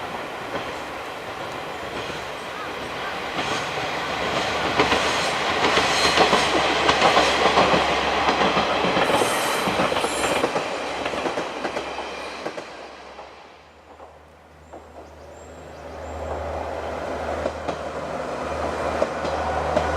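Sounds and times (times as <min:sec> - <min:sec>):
diesel railcar passing: 0:00.0 - 0:19.9
wheels clacking over rail joints: 0:00.5 - 0:13.3, 0:17.2 - 0:19.9.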